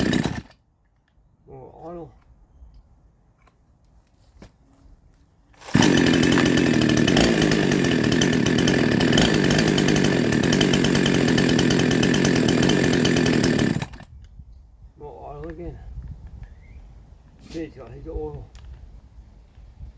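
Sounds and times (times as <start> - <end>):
chainsaw running steadily: 0.0 - 0.5, 5.6 - 14.1.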